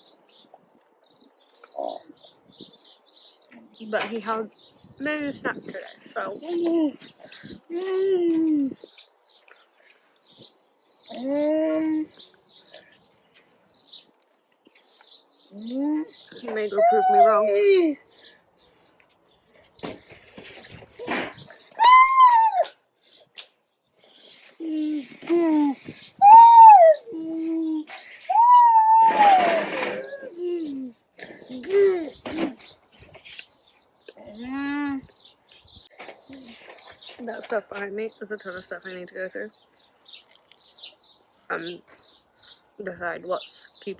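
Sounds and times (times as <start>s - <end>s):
small bird chirping: 0.0s - 43.9s
child making hooting calls: 16.8s - 18.0s, 21.8s - 22.8s, 26.2s - 30.6s.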